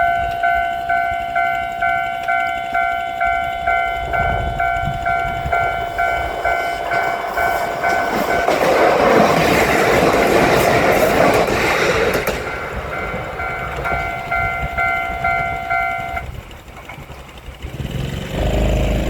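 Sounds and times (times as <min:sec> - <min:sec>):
level-crossing bell ringing: 0:00.0 - 0:09.3, 0:12.3 - 0:16.3
train passing with wheel clatter: 0:00.0 - 0:19.0.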